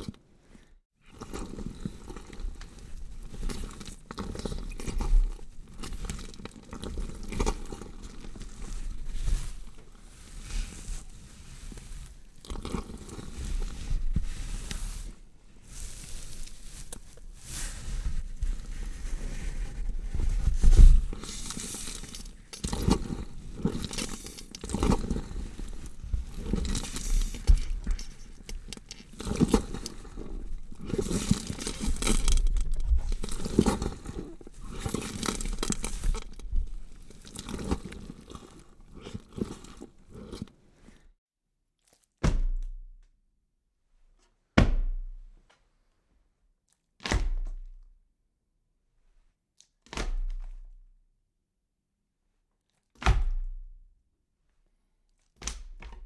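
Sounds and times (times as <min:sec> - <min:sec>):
sawing and tearing flesh: 0:01.4 - 0:20.0, 0:20.7 - 0:40.5.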